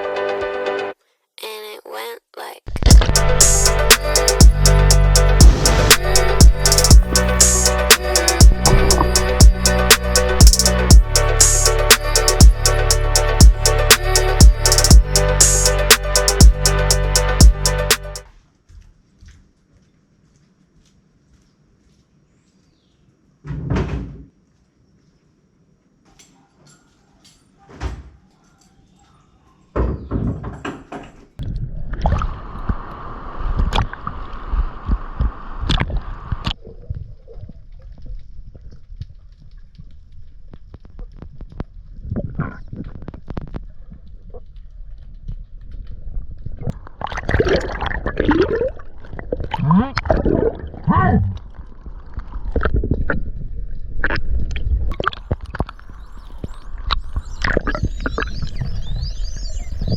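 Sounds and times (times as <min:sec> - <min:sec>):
low swooping tone: 0:02.9 - 0:18.2
dolphin clicks: 0:03.5 - 0:04.8, 0:05.9 - 0:10.8
underwater rumble: 0:08.5 - 0:09.7, 0:31.4 - 0:59.9
water sloshing and gurgling: 0:08.6 - 0:09.4, 0:31.4 - 0:32.8, 0:35.6 - 0:59.9.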